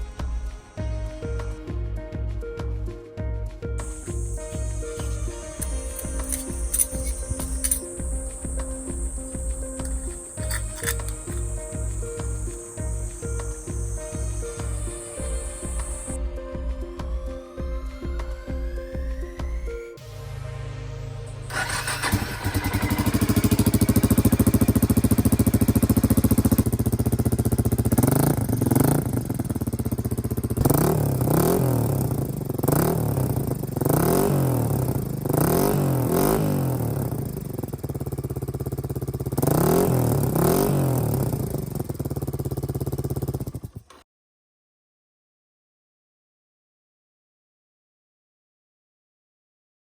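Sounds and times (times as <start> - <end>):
motorcycle engine revving: 3.8 - 16.2, 21.4 - 44.0.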